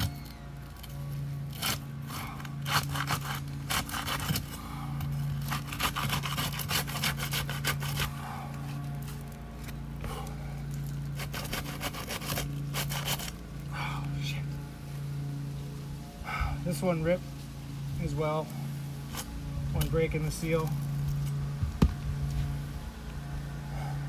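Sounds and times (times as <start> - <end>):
steady low hum: 0.0 - 24.0
metal tool scraping roof shingles: 1.5 - 8.2, 11.1 - 13.3.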